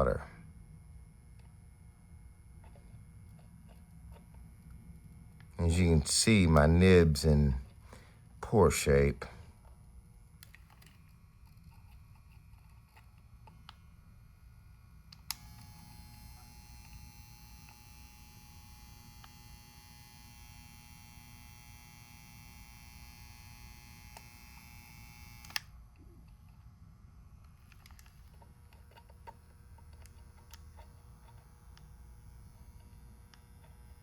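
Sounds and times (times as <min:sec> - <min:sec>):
low electrical hum: 0:00.0 - 0:34.0
high multi-tone whine: 0:15.2 - 0:25.7.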